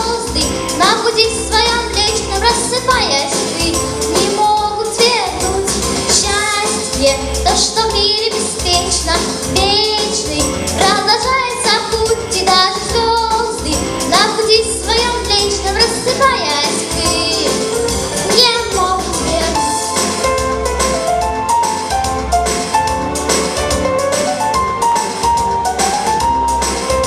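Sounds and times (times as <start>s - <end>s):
girl singing with vibrato: 0.0s - 17.7s, 18.3s - 19.8s
pop backing track: 0.0s - 27.0s.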